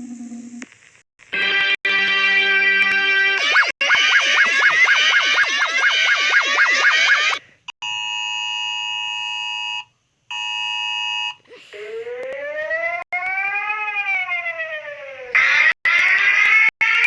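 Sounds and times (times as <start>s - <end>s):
loud harsh siren: 1.5s - 7.4s, 11.6s - 17.0s
siren wailing: 1.9s - 7.4s, 11.5s - 17.0s.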